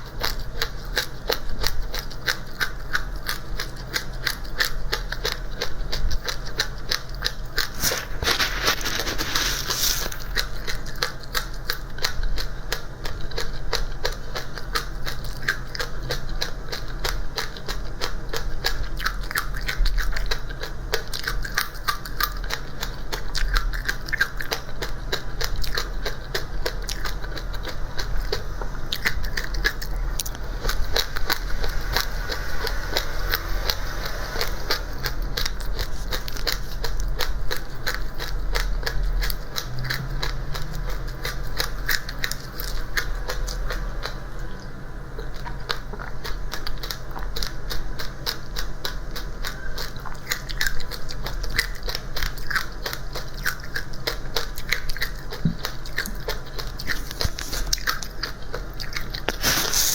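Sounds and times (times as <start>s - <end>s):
dry seeds crunched and chewed: 0.0s - 59.9s
low steady hum: 0.0s - 59.9s
loud rustling hiss: 59.4s - 59.9s.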